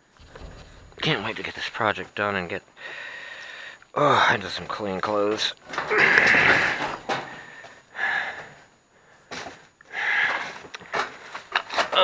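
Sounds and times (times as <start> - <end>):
metal parts scraping: 0.1 - 1.8.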